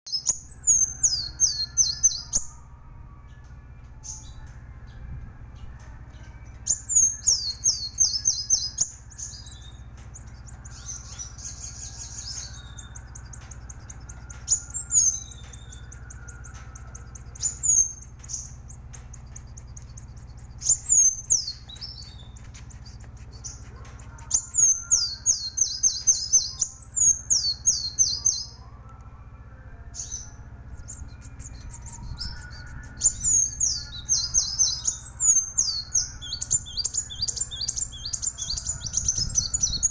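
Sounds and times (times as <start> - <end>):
buzzy bird trill: 0.1 - 2.6, 4.0 - 28.7, 29.8 - 39.9
steady low hum: 0.1 - 39.9
bird singing high notes: 5.6 - 28.7, 29.7 - 39.9.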